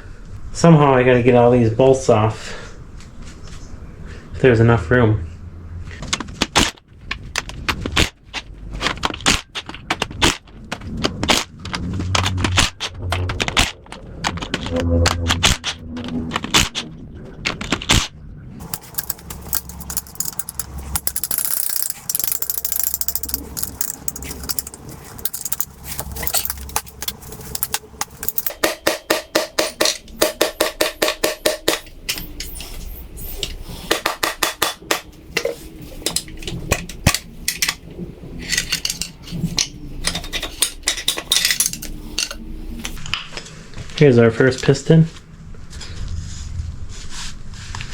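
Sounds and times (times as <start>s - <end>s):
metal tool clinks: 18.6s - 28.8s, 40.0s - 42.4s
ratchet wrench clicking: 18.6s - 32.6s.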